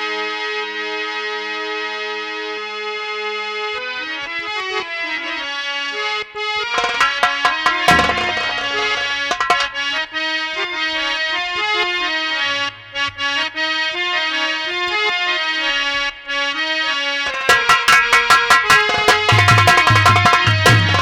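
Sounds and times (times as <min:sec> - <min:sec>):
harmonium folk melody: 0:00.0 - 0:21.0
fast drumming: 0:06.7 - 0:09.9, 0:17.2 - 0:21.0.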